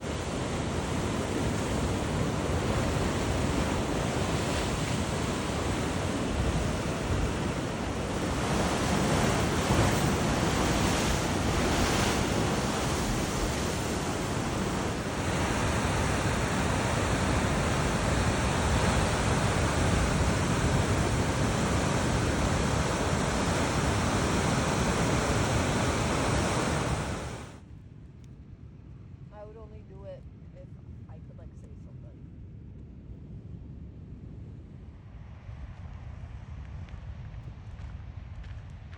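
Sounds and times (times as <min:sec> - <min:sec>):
ocean surf washing ashore: 0:00.0 - 0:27.6
wind on microphone: 0:00.0 - 0:27.7.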